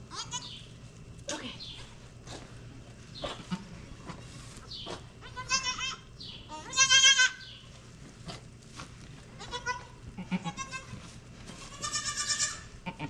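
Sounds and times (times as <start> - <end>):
goat kid bleating: 0.1 - 0.6, 3.2 - 4.2, 5.2 - 7.6, 9.4 - 13.0
faint rustles: 0.2 - 5.7, 7.4 - 12.8.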